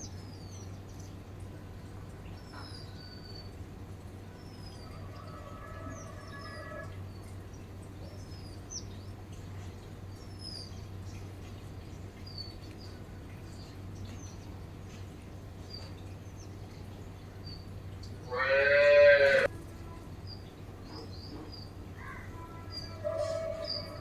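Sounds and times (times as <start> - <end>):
sparrows chirping: 0.0 - 24.0
loud pitched animal call: 5.3 - 6.9, 18.3 - 19.5.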